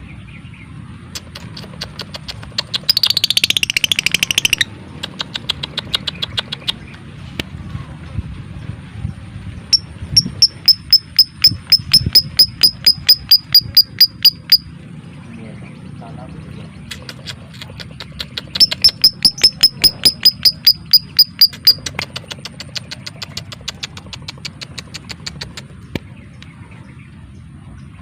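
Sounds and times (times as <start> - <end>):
lovebird chattering trill: 1.1 - 6.9, 9.7 - 14.7, 16.8 - 26.0
sharp high bird chirps: 1.1 - 6.9, 9.6 - 14.8, 17.8 - 26.1
lovebird ticks: 1.2 - 7.0, 9.7 - 14.7, 16.8 - 26.5.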